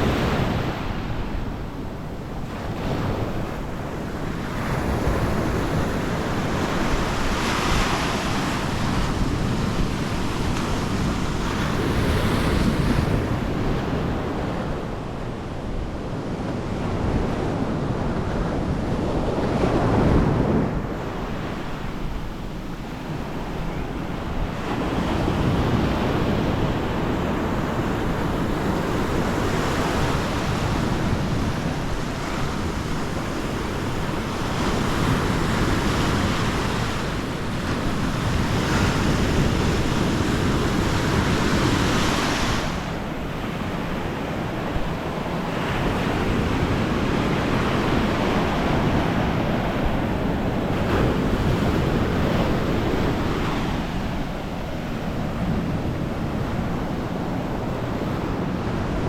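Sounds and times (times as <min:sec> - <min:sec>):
wind buffeting microphone: 0:00.0 - 0:59.0
sea waves breaking: 0:17.5 - 0:59.0.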